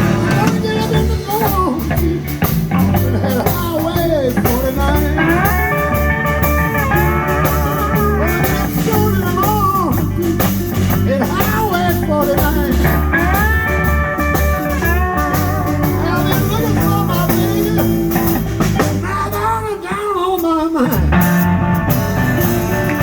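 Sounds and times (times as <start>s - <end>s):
live blues band playing: 0.0s - 23.0s.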